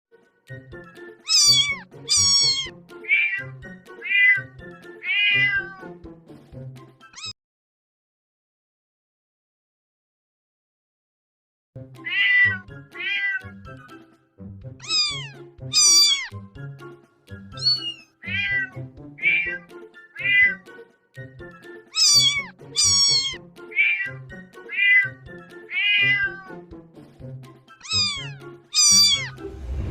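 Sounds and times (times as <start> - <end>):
background music: 0.1 - 7.3, 11.8 - 29.9
cat meowing: 1.2 - 6.0, 7.2 - 7.4, 12.0 - 13.6, 14.8 - 16.4, 17.6 - 20.6, 21.9 - 26.6, 27.8 - 29.4.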